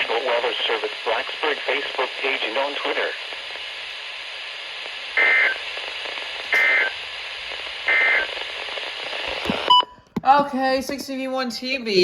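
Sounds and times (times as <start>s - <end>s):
radio hiss: 0.0s - 9.7s.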